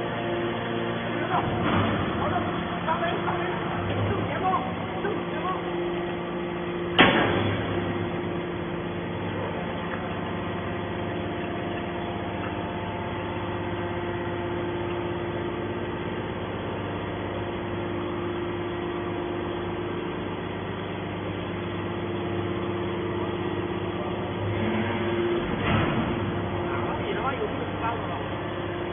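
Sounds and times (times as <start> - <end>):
baler machine hum with held tones: 0.0 - 28.9
loud clank: 1.4 - 2.3, 6.9 - 8.0, 25.5 - 26.4.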